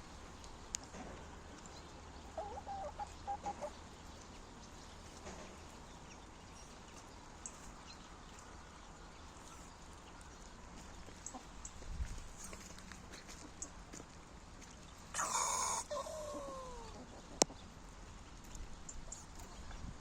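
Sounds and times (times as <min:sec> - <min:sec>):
chicken clucking: 0:01.5 - 0:04.4, 0:15.2 - 0:17.8.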